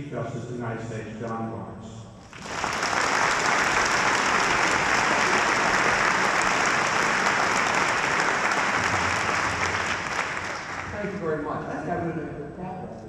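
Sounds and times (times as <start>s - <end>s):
audience applauding: 2.3s - 11.3s.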